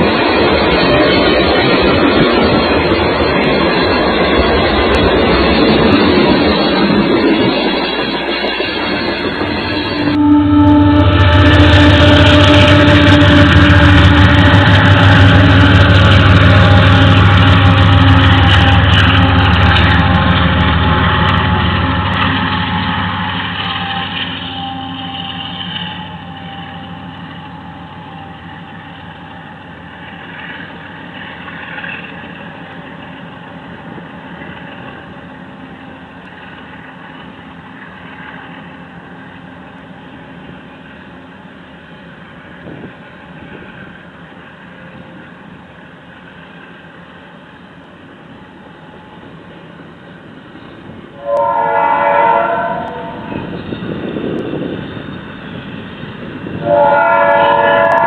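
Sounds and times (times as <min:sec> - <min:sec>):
train rumbling: 0:00.0 - 0:58.0
locomotive air horn blasts: 0:09.9 - 0:29.6, 0:51.2 - 0:53.5, 0:56.5 - 0:58.0.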